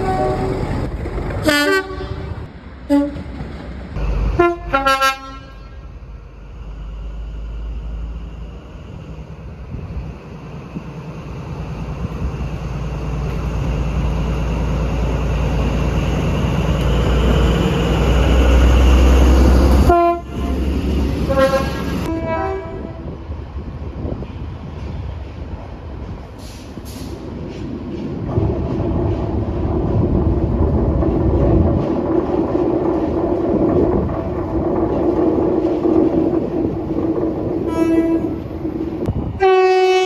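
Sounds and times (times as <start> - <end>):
train horn blasts: 0.0 - 0.6, 1.4 - 3.2, 4.4 - 5.9, 19.8 - 23.1, 37.7 - 38.4, 39.4 - 40.0
passing train rumble: 0.0 - 40.0.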